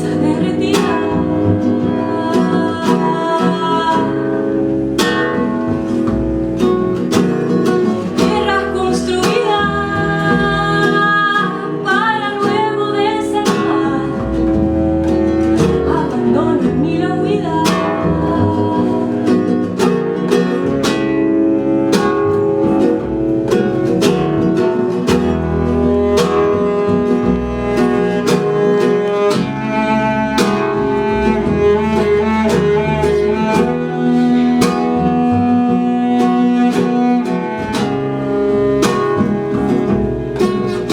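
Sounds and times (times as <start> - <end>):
person singing with vibrato: 0.0 - 4.4, 8.2 - 14.4
bowed cello: 0.0 - 40.9
plucked guitar: 0.0 - 40.9.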